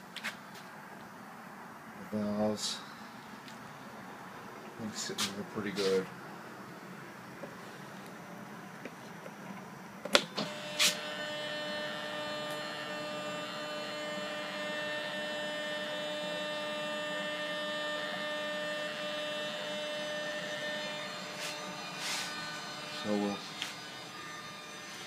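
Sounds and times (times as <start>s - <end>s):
electric motor whirring: 10.3s - 25.0s.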